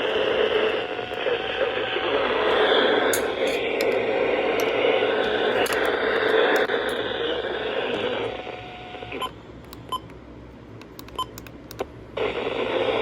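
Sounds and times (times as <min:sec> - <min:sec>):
radio hiss: 0:00.0 - 0:03.1, 0:12.2 - 0:13.0
clicks: 0:04.6 - 0:07.0, 0:09.2 - 0:10.2, 0:10.8 - 0:11.9.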